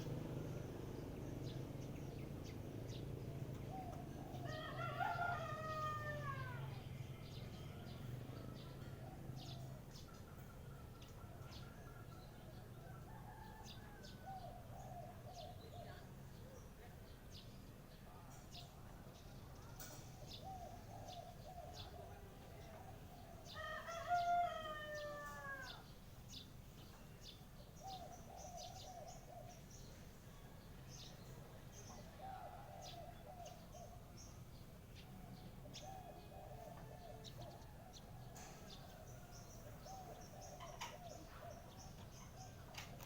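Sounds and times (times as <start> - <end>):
low cooing calls: 2.9 - 6.8, 7.7 - 16.3, 20.0 - 26.4, 27.2 - 30.4, 31.0 - 43.0
rooster crowing: 4.4 - 6.8, 23.5 - 25.9
small birds chirping: 13.6 - 43.0.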